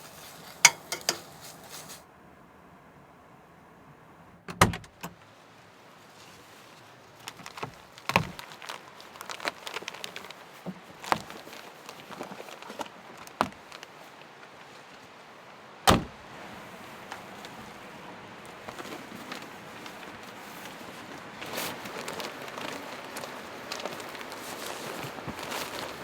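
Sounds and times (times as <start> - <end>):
objects knocking and clattering: 0.6 - 1.3.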